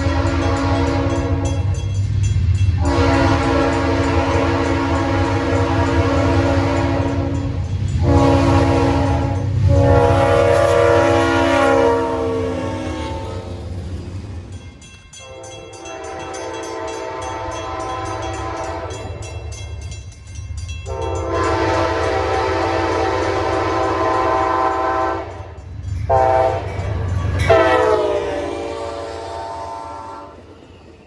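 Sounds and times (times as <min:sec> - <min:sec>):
locomotive air horn blasts: 0:00.0 - 0:01.8, 0:02.8 - 0:13.6, 0:15.2 - 0:19.1, 0:20.9 - 0:25.4, 0:26.1 - 0:26.7, 0:27.5 - 0:30.4
low rumble of passing train: 0:00.0 - 0:31.0.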